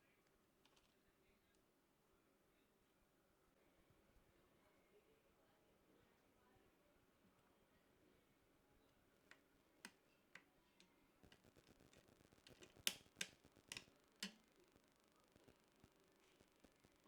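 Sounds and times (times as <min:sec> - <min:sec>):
computer parts clicking: 0:11.2 - 0:17.0.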